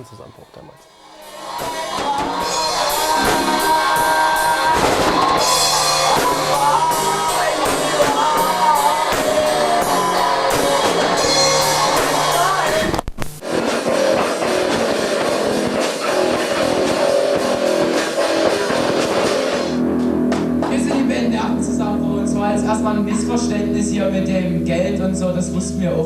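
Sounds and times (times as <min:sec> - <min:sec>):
loud rock music: 0:01.2 - 0:24.3
person singing: 0:01.5 - 0:17.6.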